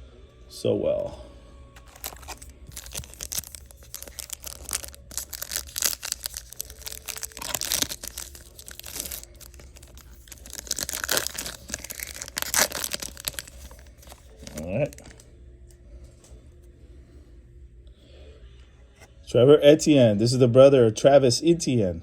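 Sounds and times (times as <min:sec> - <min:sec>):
foil wrapper tearing and crinkling: 0:01.8 - 0:15.2.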